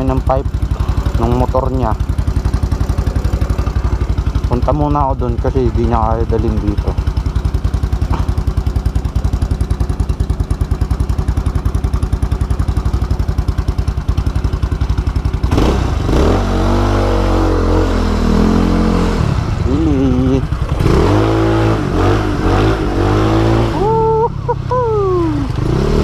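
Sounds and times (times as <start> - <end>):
motorcycle engine idling and accelerating: 0.0 - 26.0.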